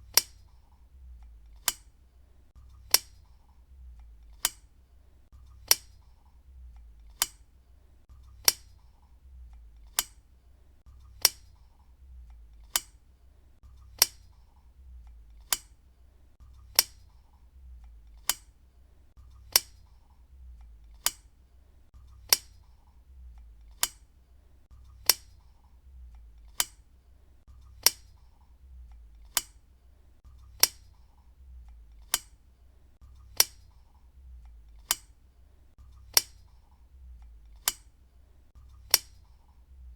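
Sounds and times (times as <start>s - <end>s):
lamp switch clicking: 0.1s - 0.6s, 1.2s - 2.0s, 2.8s - 3.4s, 4.0s - 4.7s, 5.6s - 7.5s, 8.3s - 10.3s, 11.1s - 13.0s, 13.9s - 14.4s, 15.0s - 15.8s, 16.7s - 18.6s, 19.4s - 21.3s, 22.1s - 22.8s, 23.4s - 24.1s, 24.9s - 26.9s, 27.7s - 29.7s, 30.5s - 32.4s, 33.2s - 35.2s, 36.0s - 38.0s, 38.8s - 39.6s.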